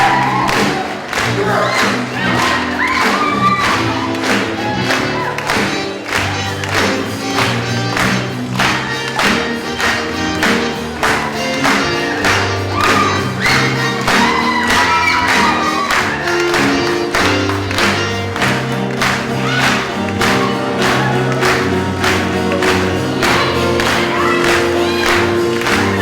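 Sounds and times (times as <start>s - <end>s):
live band playing: 0.0s - 26.0s
person singing: 19.4s - 26.0s.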